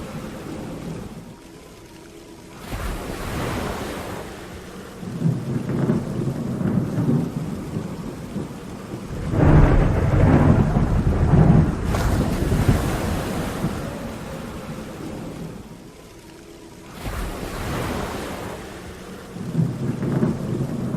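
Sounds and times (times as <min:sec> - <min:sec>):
rain: 0:00.0 - 0:20.9
thunder rumbling: 0:05.0 - 0:15.7, 0:19.4 - 0:20.9.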